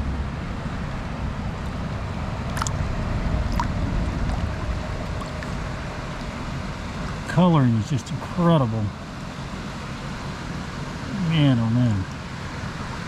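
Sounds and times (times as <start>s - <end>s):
wind rumble on microphone: 0.0s - 7.4s
stream rushing: 0.4s - 13.0s.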